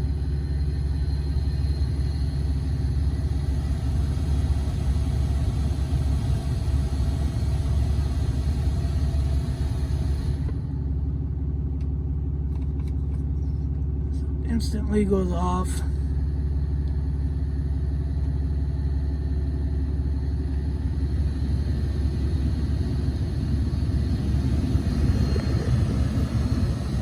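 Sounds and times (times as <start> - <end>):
diesel engine idling: 0.0 - 27.0
blower motor air rushing: 21.2 - 27.0.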